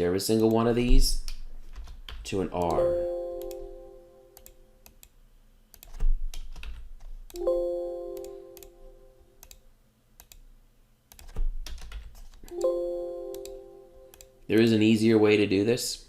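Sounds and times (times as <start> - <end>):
keyboard keystrokes and clicks: 0.4 - 8.8, 9.4 - 10.5, 11.1 - 14.7
computer alert chime: 2.8 - 4.4, 7.4 - 9.3, 12.5 - 14.4.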